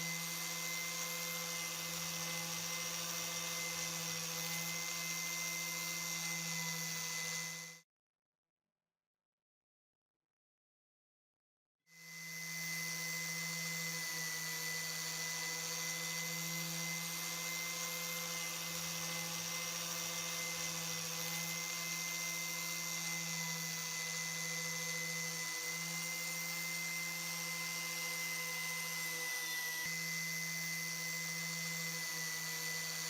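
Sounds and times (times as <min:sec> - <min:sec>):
electric power tool whining: 0:00.0 - 0:07.8, 0:11.9 - 0:33.0.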